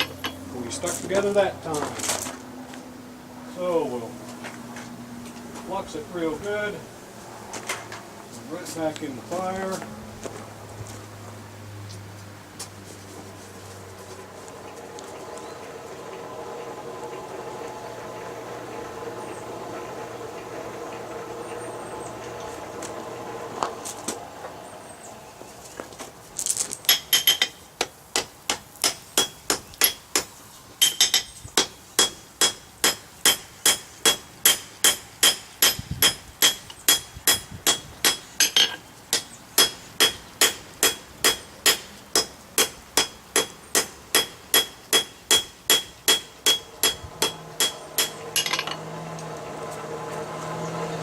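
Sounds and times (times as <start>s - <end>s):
hammer blows on hot steel: 26.9s - 48.8s
anvil ringing: 32.0s - 48.9s.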